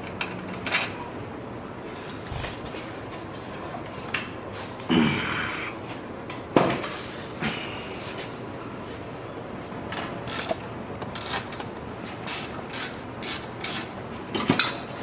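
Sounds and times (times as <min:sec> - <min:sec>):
ratchet wrench clicking: 0:10.3 - 0:11.6, 0:12.2 - 0:14.0.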